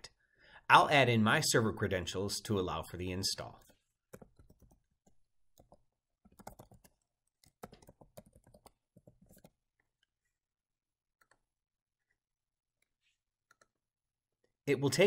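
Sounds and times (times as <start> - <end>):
typing on computer keyboard: 4.1 - 9.6.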